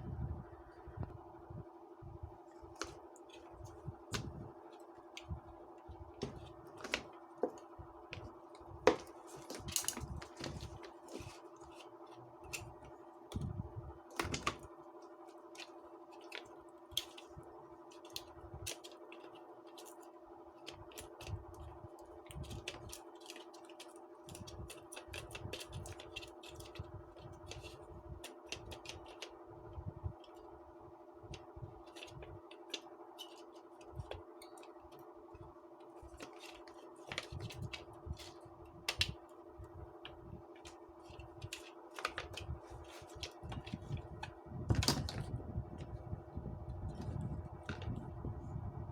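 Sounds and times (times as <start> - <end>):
steady electrical hum: 0.0 - 48.9
clicks and taps of small parts: 8.9 - 12.7, 22.3 - 29.3, 31.3 - 35.1, 36.0 - 39.2.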